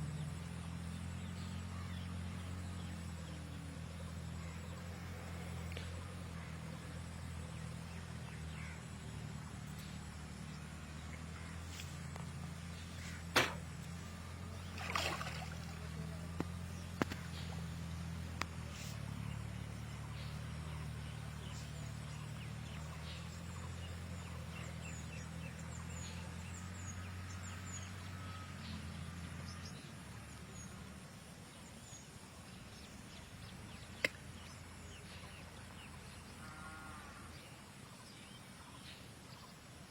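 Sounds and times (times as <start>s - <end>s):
low engine hum: 0.0s - 39.9s
sharp knocks: 13.3s - 13.6s.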